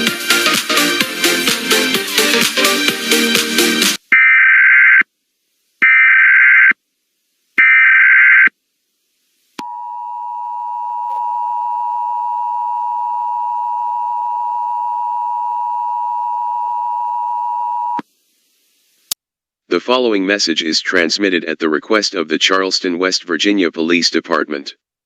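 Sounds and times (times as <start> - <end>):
screechy data tones: 4.2 - 5.1, 5.8 - 6.8, 7.6 - 8.5.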